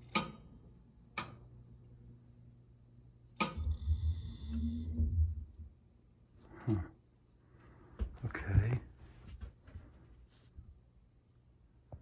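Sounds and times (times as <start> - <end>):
low electrical buzz: 0.0 - 9.0
electrical switch click: 3.4 - 3.8.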